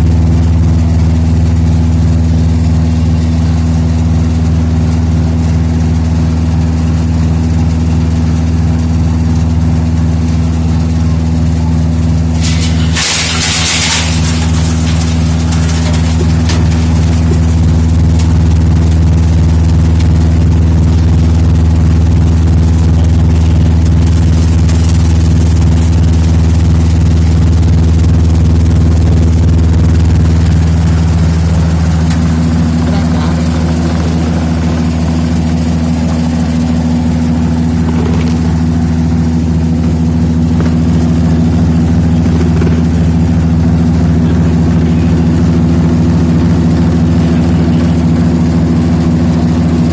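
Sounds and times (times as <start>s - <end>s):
machine humming: 0.0s - 49.9s.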